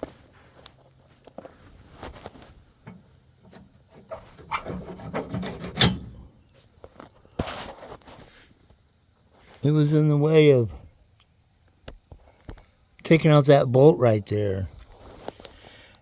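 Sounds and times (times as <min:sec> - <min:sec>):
small metal parts scraping: 0:02.2 - 0:06.4.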